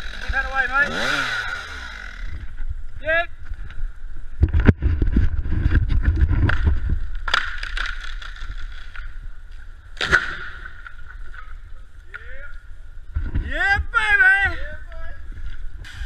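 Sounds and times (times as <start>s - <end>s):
sharp wood cracks: 6.3s - 9.2s, 9.9s - 11.5s.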